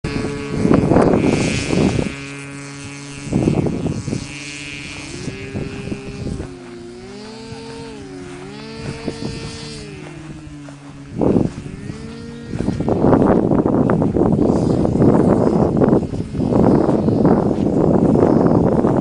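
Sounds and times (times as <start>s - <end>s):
model airplane engine buzzing: 0.0s - 19.0s.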